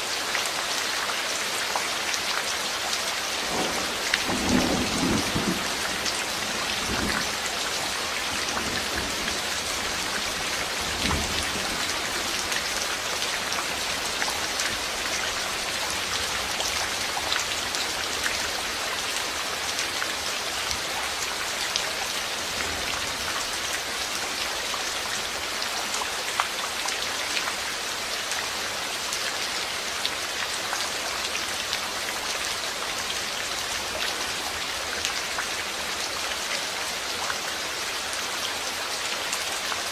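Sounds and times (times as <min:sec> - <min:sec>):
steady rain falling: 0:00.0 - 0:39.9
thunder rumbling: 0:03.5 - 0:07.4.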